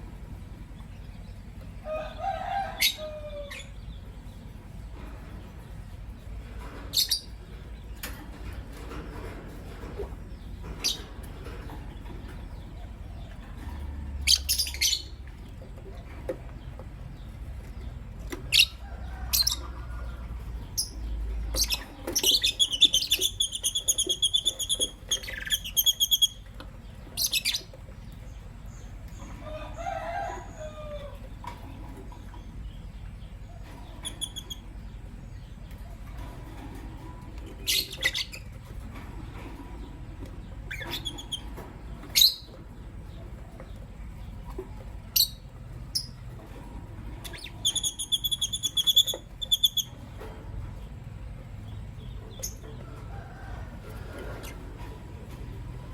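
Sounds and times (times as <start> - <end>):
lovebirds chirping: 9.2 - 29.7, 31.6 - 46.5, 47.1 - 50.2.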